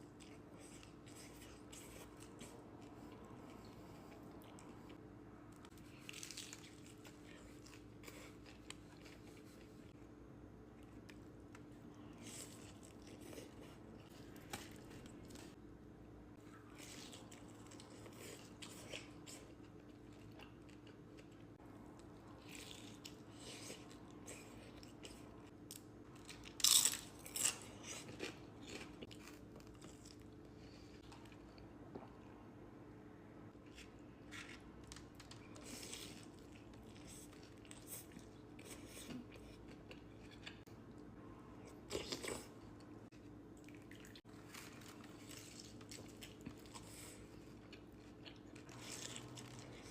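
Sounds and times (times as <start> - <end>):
faint steady hum: 0.0 - 49.9
crunchy bites and chewing: 22.4 - 30.5, 43.6 - 49.9.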